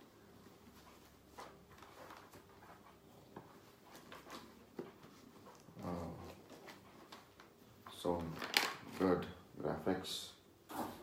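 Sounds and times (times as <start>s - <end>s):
packaging rustling and clicking: 8.2s - 9.1s.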